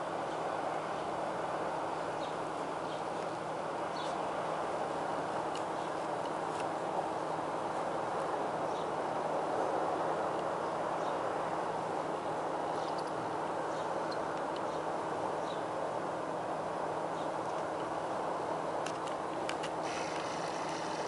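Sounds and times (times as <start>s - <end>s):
background hiss: 19.7s - 21.0s.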